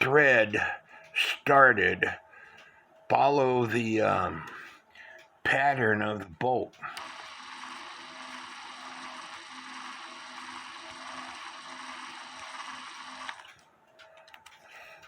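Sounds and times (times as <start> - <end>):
faint clicks: 2.5 - 3.1, 6.4 - 15.0
cordless drill running: 7.0 - 13.5.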